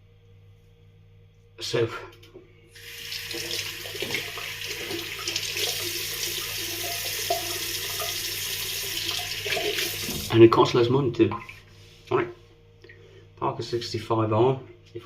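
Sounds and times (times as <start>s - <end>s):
tap running into sink: 3.2s - 8.4s, 9.0s - 10.3s.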